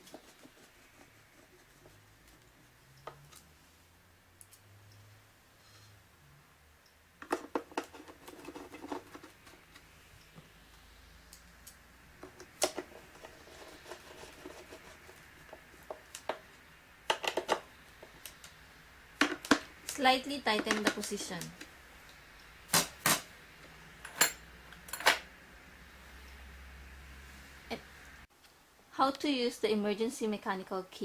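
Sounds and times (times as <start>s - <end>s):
screwdriver clicking and scraping: 7.2s - 9.9s.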